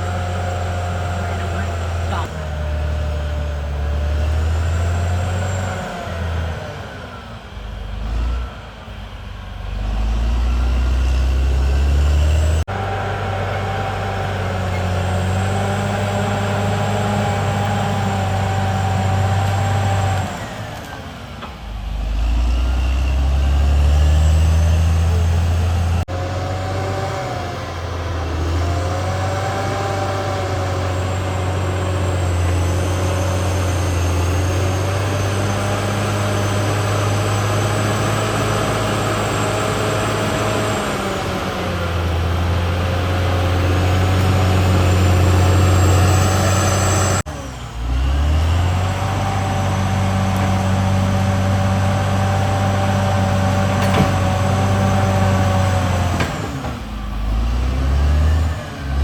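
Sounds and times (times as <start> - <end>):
bulldozer diesel engine running: 0.0 - 59.0
high-pitched whine: 43.3 - 47.8.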